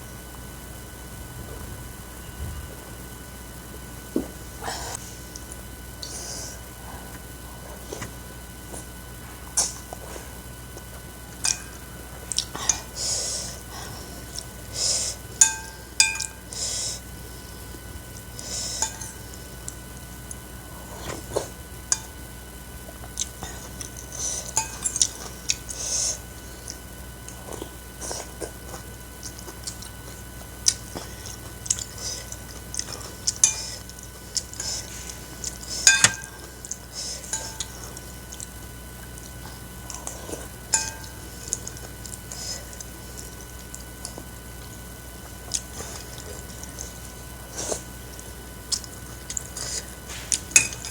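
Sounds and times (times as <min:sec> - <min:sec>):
chewing and slurping: 0:04.8 - 0:50.9
spoon clinking against bowl: 0:15.4 - 0:16.4, 0:35.9 - 0:36.4.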